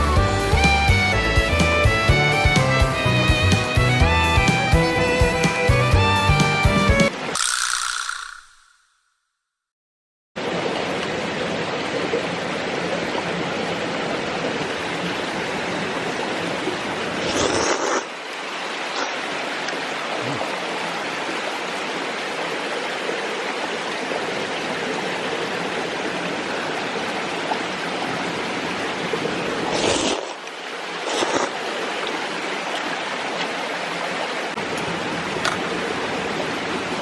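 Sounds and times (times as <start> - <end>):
mountain stream running: 10.4 - 37.0.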